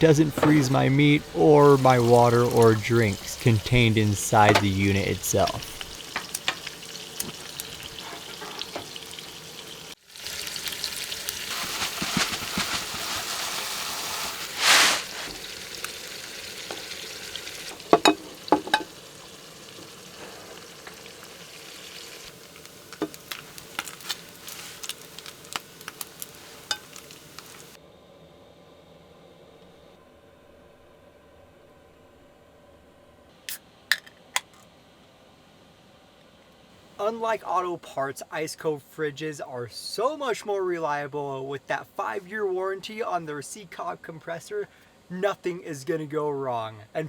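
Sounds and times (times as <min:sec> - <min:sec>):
food sizzling in a pan: 0:00.1 - 0:27.8
utensil stirring in a pan: 0:00.3 - 0:27.8.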